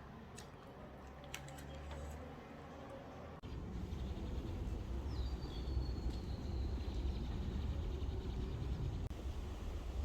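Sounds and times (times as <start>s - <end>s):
low outdoor rumble: 2.2s - 10.0s.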